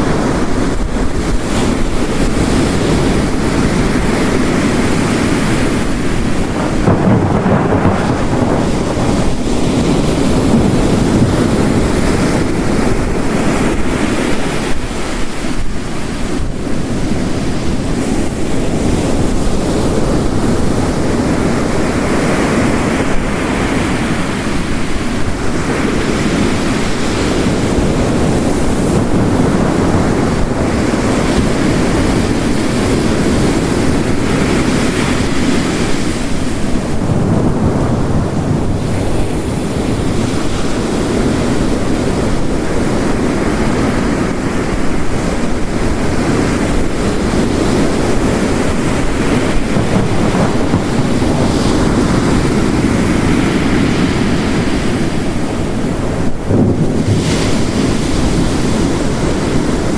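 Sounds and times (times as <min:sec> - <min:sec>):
heavy rain: 0:00.0 - 0:59.9
ocean surf breaking: 0:00.0 - 0:59.9
distant thunder rumbling: 0:03.3 - 0:14.0, 0:36.5 - 0:40.5, 0:48.1 - 0:59.9.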